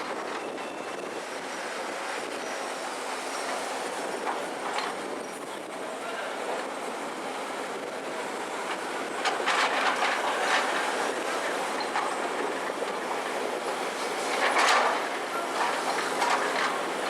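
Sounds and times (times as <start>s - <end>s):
excavator mechanical clatter: 8.6s - 17.0s
metallic clanks and squeals: 11.8s - 12.3s.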